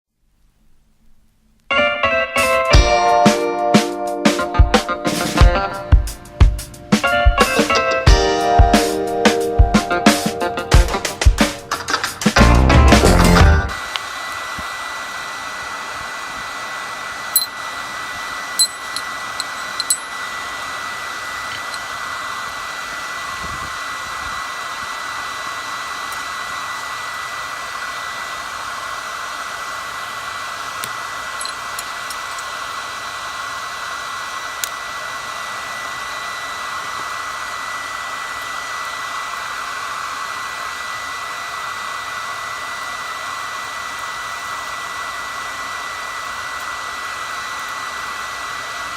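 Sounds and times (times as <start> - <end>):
forge blower rushing air: 2.8 - 48.9
metal clinks: 17.4 - 17.6, 18.6 - 20.2, 31.4 - 32.4.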